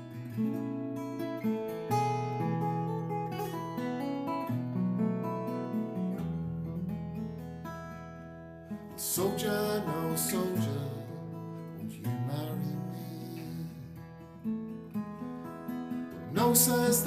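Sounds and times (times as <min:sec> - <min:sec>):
acoustic guitar folk melody: 0:00.0 - 0:17.0.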